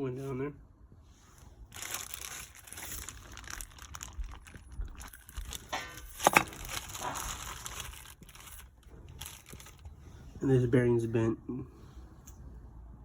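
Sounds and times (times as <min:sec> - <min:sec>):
rustling handling noise: 0:00.2 - 0:10.6.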